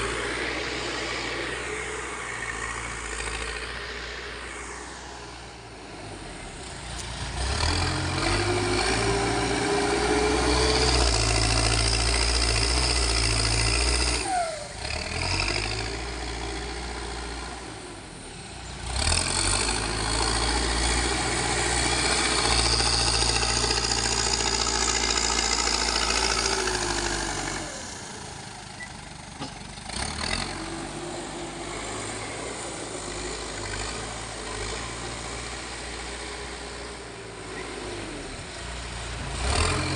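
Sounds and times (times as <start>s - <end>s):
diesel engine revving: 0.0s - 39.9s.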